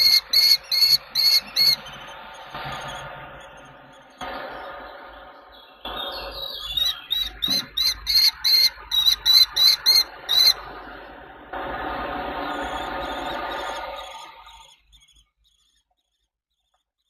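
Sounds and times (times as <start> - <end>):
falcon shrill calls: 0.0 - 3.0, 6.1 - 10.7
steady hum: 0.0 - 15.6.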